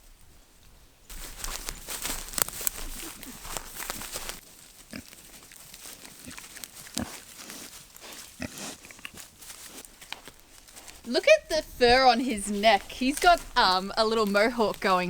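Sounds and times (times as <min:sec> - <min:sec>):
rustling and crackling: 0:00.0 - 0:15.0
pigs grunting: 0:04.9 - 0:09.3.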